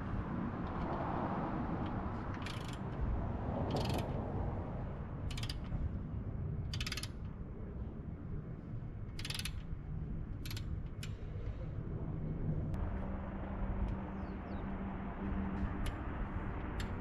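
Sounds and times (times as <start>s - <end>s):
steady low hum: 0.0s - 17.0s
metallic ratcheting and clicking: 1.8s - 3.0s, 3.7s - 4.2s, 5.3s - 5.8s, 6.7s - 7.4s, 9.1s - 11.2s.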